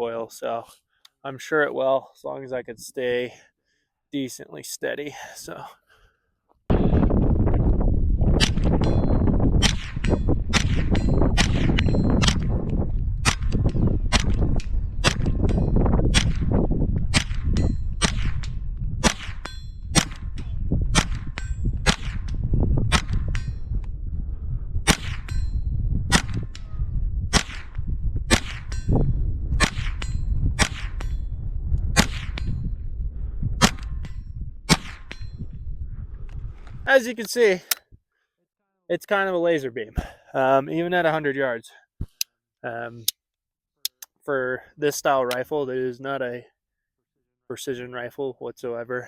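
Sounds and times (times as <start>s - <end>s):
low rumble: 6.7s - 36.9s
rifle shots: 8.4s - 8.8s, 9.6s - 12.5s, 13.2s - 14.4s, 15.0s - 15.4s, 16.1s - 16.5s, 17.1s - 23.4s, 24.9s - 25.3s, 26.1s - 26.6s, 27.3s - 28.8s, 29.6s - 31.0s, 32.0s - 32.4s, 33.6s - 34.0s, 34.7s - 35.2s
bullet ringing on steel: 8.8s - 9.3s, 19.4s - 19.9s.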